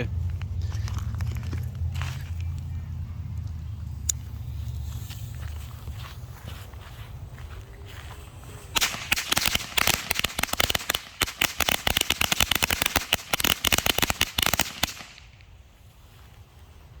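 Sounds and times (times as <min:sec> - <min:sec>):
firecrackers banging: 0:08.5 - 0:15.5.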